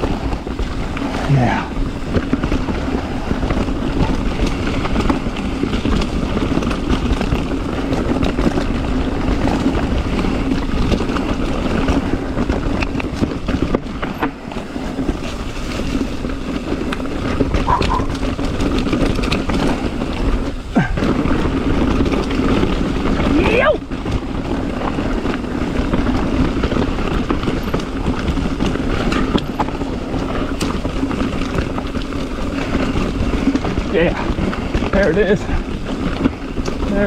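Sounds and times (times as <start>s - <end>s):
steady low rumble: 0.0s - 27.0s
wind on microphone: 0.0s - 30.6s
bike clattering over rocks: 0.0s - 37.0s.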